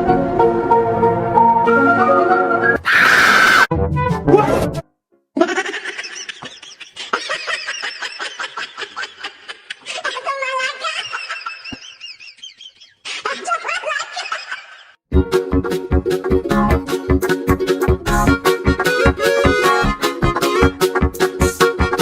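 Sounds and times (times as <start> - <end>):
high-pitched laughing: 5.4 - 14.9
music with steady beat: 15.1 - 22.0.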